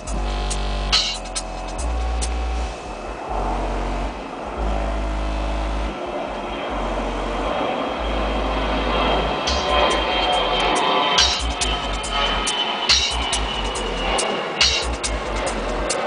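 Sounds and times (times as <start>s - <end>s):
electronic music with deep sub-bass: 0.0s - 16.0s.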